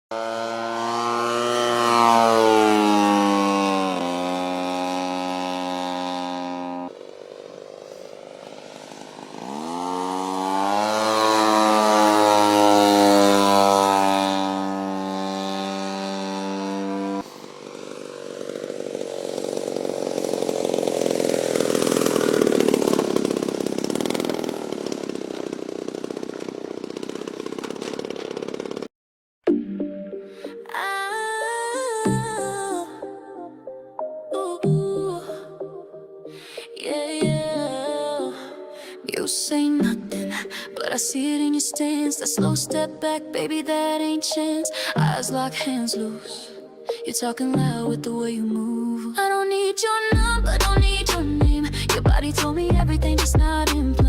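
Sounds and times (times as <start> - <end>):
model-aircraft engine revving: 0.1 - 28.9, 50.2 - 54.0.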